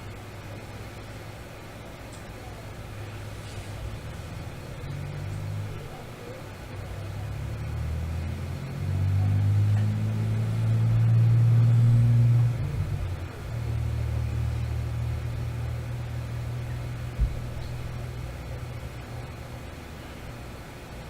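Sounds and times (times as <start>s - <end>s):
vehicle engine rumbling: 2.5s - 19.5s.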